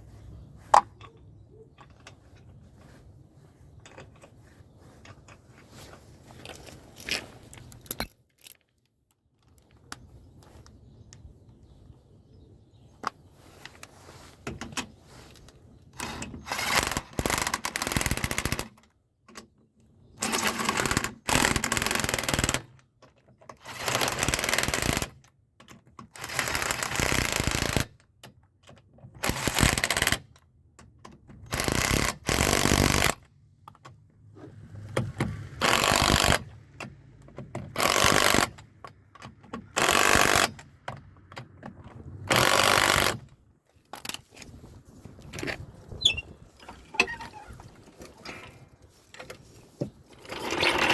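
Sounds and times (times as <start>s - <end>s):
impact wrench bursts: 16.0s - 18.7s, 20.2s - 22.8s, 23.7s - 25.2s, 29.2s - 30.2s, 35.6s - 36.5s, 37.8s - 38.6s, 39.8s - 40.6s, 42.3s - 43.2s.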